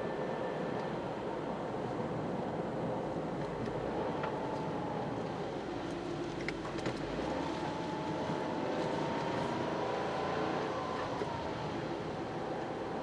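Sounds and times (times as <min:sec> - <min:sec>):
car engine under way: 0:06.3 - 0:13.0.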